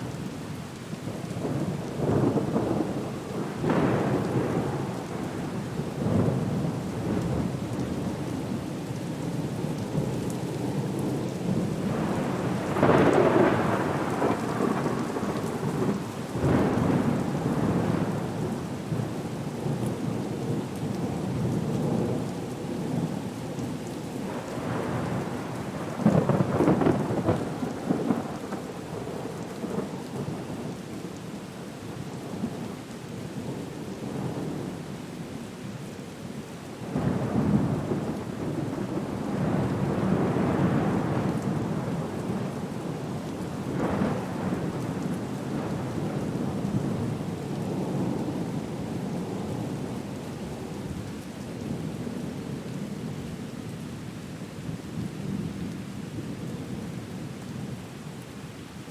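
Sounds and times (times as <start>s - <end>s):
steady rain: 0.0s - 58.9s
thunder rumbling: 11.8s - 19.0s, 24.3s - 30.3s.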